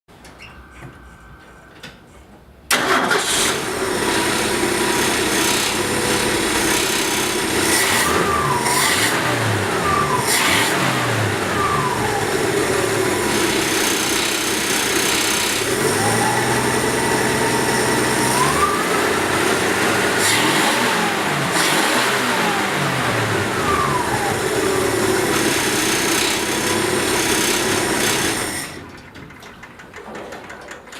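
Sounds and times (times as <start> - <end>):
truck engine starting and revving: 2.7 - 29.6
rattle: 25.4 - 30.9.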